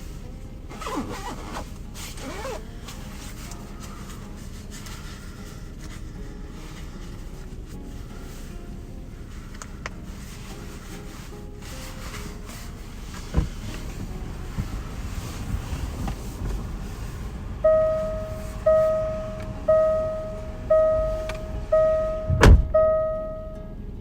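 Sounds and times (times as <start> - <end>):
handling knocks and rustling: 0.0 - 17.2
car warning chime dinging: 17.6 - 23.9
loud thump: 22.3 - 22.8.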